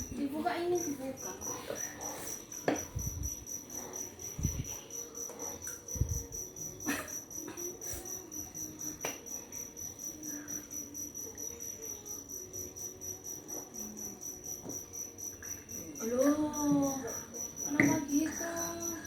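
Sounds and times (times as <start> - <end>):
cricket chirping: 0.0 - 19.0.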